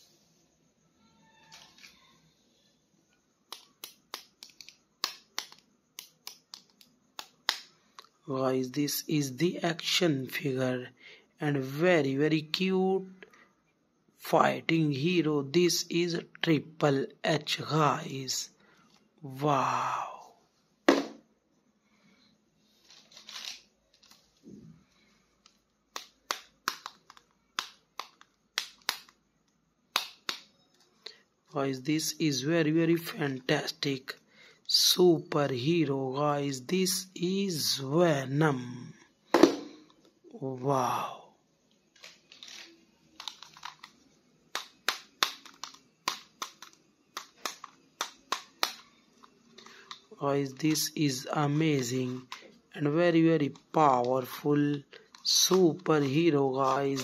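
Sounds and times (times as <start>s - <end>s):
plastic toy parts clicking: 3.5s - 8.1s, 25.4s - 29.2s, 41.9s - 50.1s, 54.7s - 55.9s.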